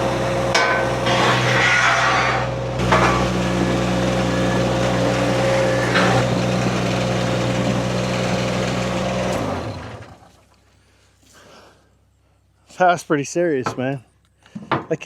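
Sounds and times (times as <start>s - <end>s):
skid steer engine running: 0.0s - 10.5s
sharp metal clanks: 0.5s - 1.5s, 2.8s - 3.4s.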